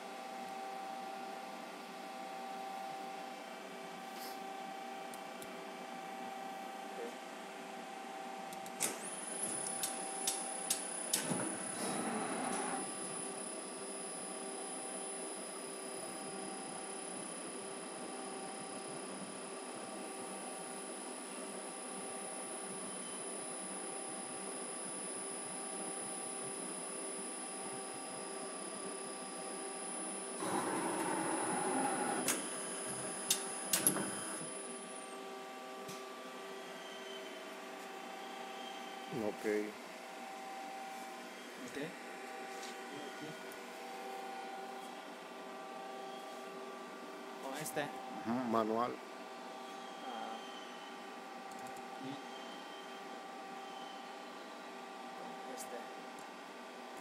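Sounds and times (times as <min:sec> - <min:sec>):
steady machine hum: 0:00.0 - 0:56.9
whirring noise: 0:08.8 - 0:35.0
high whine winding down: 0:09.2 - 0:34.9
sharp machine clicks: 0:09.7 - 0:11.3.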